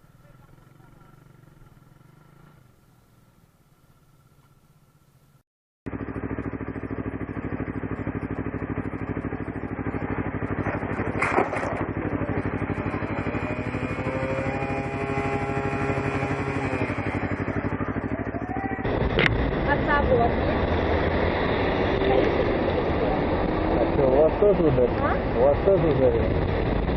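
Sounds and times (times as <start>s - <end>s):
motorcycle engine running: 0.0s - 26.9s
sharp clatter: 10.5s - 12.1s.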